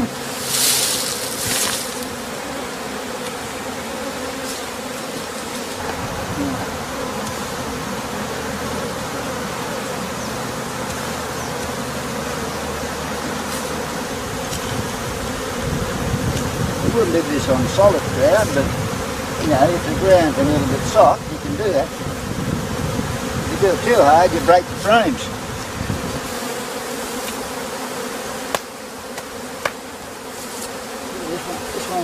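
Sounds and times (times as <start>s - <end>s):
rustling: 0.0s - 2.3s, 13.2s - 15.4s, 29.7s - 30.9s
honey bees buzzing: 0.0s - 32.0s.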